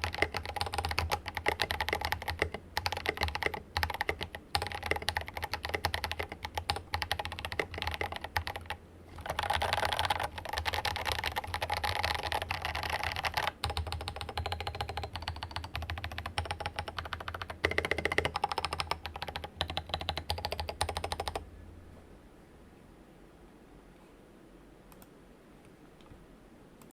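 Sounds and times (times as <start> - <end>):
fast typing on mechanical keyboard: 0.0 - 21.4.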